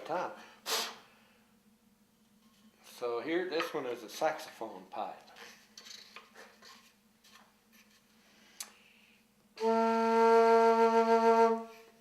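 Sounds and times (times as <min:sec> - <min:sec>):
organ pipe steady note: 0:09.6 - 0:11.6.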